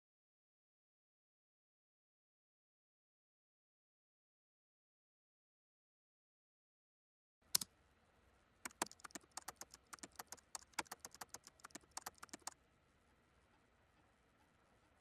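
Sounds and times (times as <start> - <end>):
rapid irregular clicking: 8.6 - 12.6.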